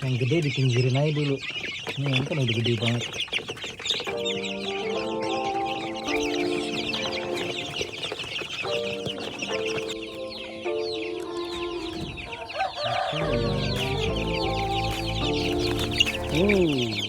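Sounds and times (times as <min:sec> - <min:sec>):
chicks peeping: 0:00.0 - 0:17.0
background music with held notes: 0:03.6 - 0:17.0.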